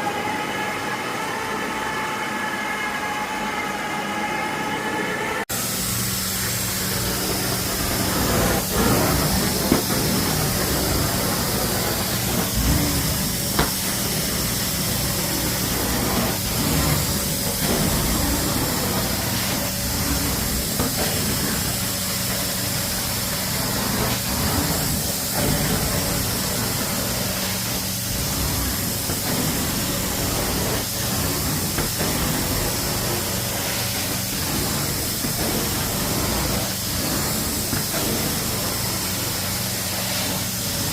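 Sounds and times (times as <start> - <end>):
carpet cleaning machine hiss: 5.5 - 40.9
low motor hum: 5.6 - 33.4.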